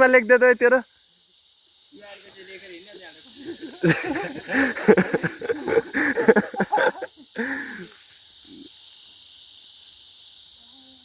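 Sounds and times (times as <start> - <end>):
insects chorus: 0.0 - 11.0.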